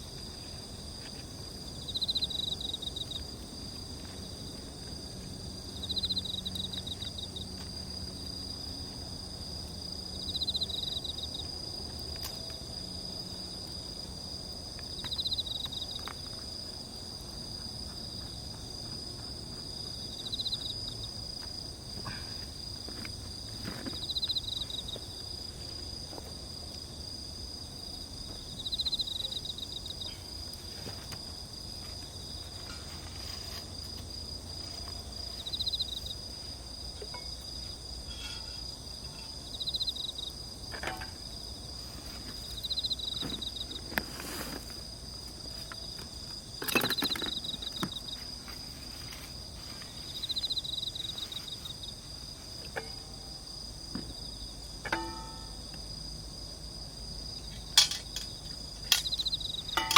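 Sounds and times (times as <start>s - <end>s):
insects trilling: 0.0s - 59.9s
pulsed insect trill: 1.7s - 11.7s, 27.0s - 30.5s, 33.8s - 41.8s, 42.4s - 43.8s, 45.0s - 59.9s.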